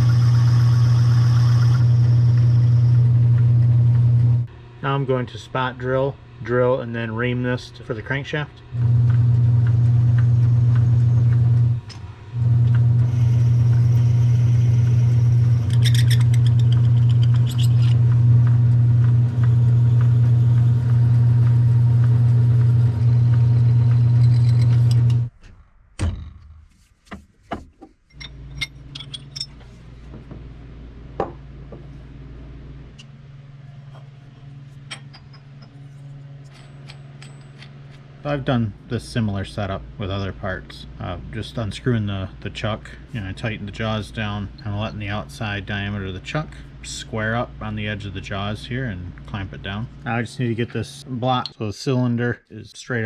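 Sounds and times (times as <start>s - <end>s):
metal lathe humming: 0.0s - 4.5s, 8.7s - 25.3s
quiet machine hum: 0.0s - 25.4s, 27.6s - 53.0s.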